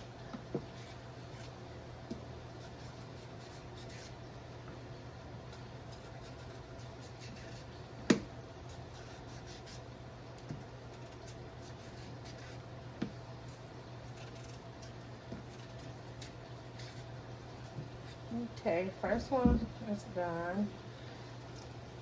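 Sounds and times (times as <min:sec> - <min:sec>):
knife scraping cucumber skin: 0:05.5 - 0:07.8, 0:10.9 - 0:12.7, 0:13.4 - 0:17.1.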